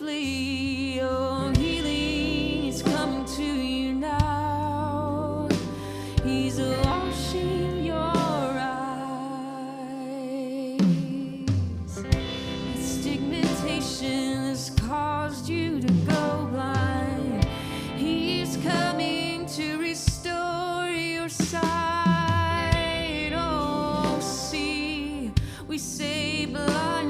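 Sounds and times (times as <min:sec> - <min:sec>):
person singing melody: 0:00.0 - 0:27.0
sustained instrumental chords: 0:11.9 - 0:27.0.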